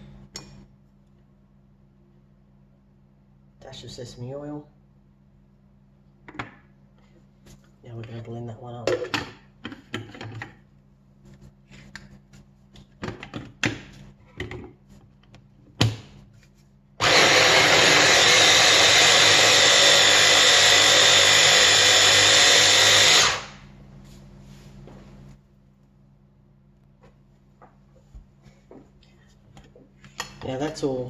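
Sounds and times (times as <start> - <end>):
hand blender motor running: 17.0 - 23.6.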